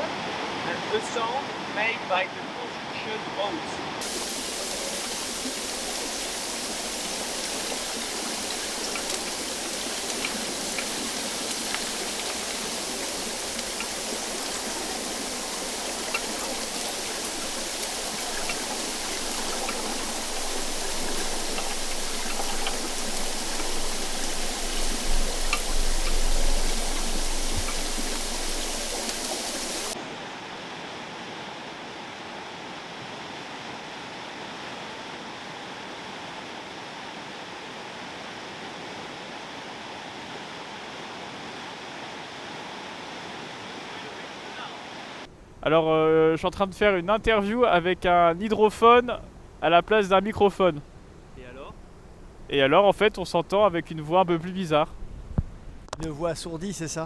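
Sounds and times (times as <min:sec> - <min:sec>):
underwater river rushing hiss: 0:04.0 - 0:30.0
faint ticks: 0:05.0 - 0:30.0.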